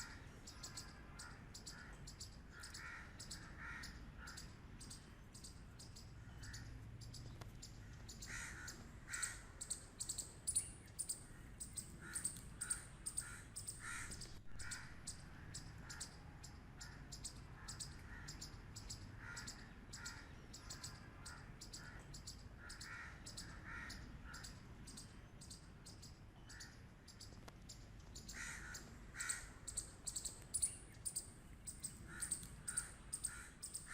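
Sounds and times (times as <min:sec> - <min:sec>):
squirrel barking: 0:08.1 - 0:16.2, 0:28.2 - 0:33.9.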